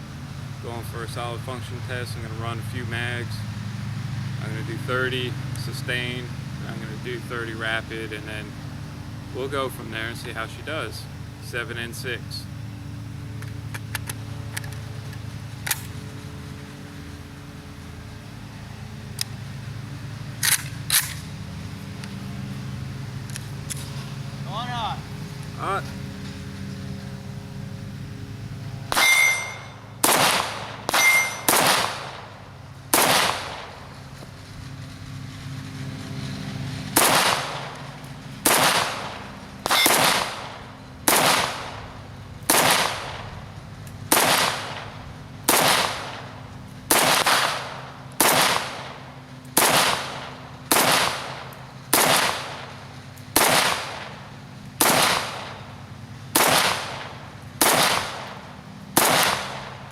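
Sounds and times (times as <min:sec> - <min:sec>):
metallic ring: 0:28.9 - 0:29.9, 0:30.9 - 0:31.6
rifle shots: 0:28.9 - 0:32.3, 0:32.9 - 0:33.8, 0:37.0 - 0:37.8, 0:38.4 - 0:41.8, 0:42.5 - 0:43.3, 0:44.1 - 0:46.3, 0:46.9 - 0:49.0, 0:49.6 - 0:52.7, 0:53.4 - 0:54.2, 0:54.8 - 0:55.6, 0:56.3 - 0:58.4, 0:59.0 - 0:59.8.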